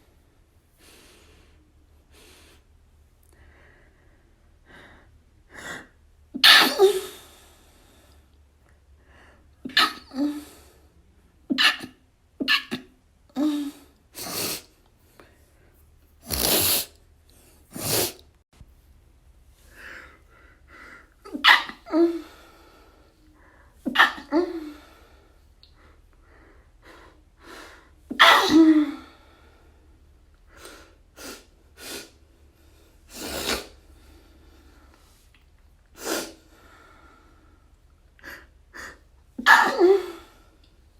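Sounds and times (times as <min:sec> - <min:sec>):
person sneezing: 0:06.4 - 0:07.2, 0:09.7 - 0:10.5, 0:11.5 - 0:14.7, 0:16.2 - 0:17.0, 0:17.7 - 0:18.2, 0:21.2 - 0:22.3, 0:23.8 - 0:24.9, 0:28.1 - 0:29.1, 0:33.1 - 0:33.8, 0:36.0 - 0:36.4, 0:39.4 - 0:40.4.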